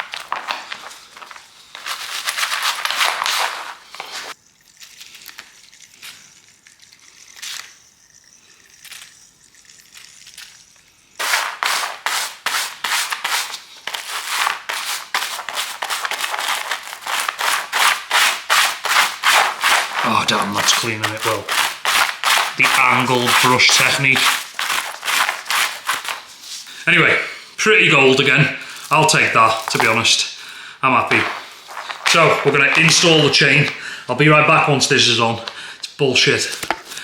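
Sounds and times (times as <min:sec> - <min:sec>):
brush scrubbing bike chain: 0:00.0 - 0:04.4, 0:11.2 - 0:33.6.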